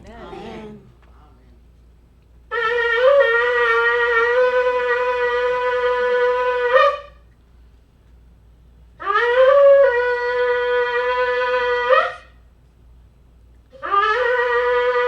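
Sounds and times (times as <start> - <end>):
shofar blasts: 2.5 - 7.3, 9.0 - 12.4, 13.8 - 15.0.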